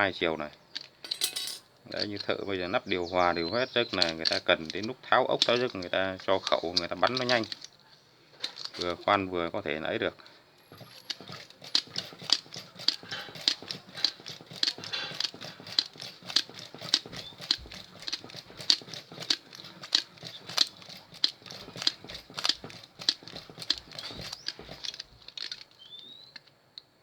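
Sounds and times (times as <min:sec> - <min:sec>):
wire winding clicks: 0:03.9 - 0:07.8, 0:10.6 - 0:26.5.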